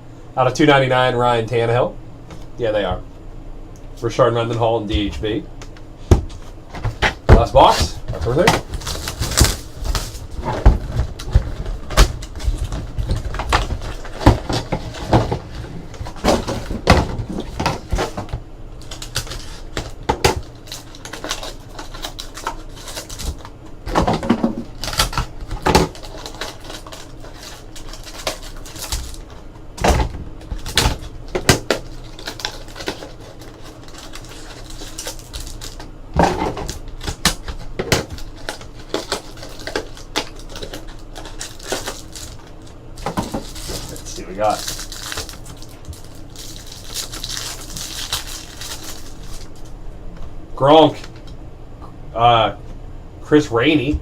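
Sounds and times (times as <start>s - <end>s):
low hum: 0.0s - 54.0s
cardboard and wrappers rustling: 6.2s - 49.8s.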